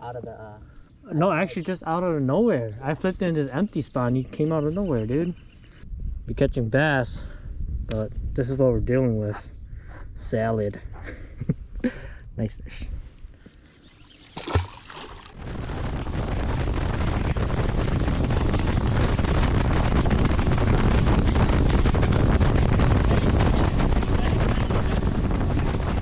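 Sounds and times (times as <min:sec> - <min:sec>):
wind buffeting microphone: 0:04.8 - 0:11.0, 0:14.4 - 0:26.0.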